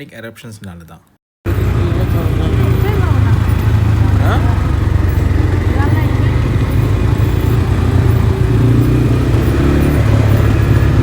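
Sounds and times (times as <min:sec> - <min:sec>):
quad bike engine running: 0:01.5 - 0:11.0.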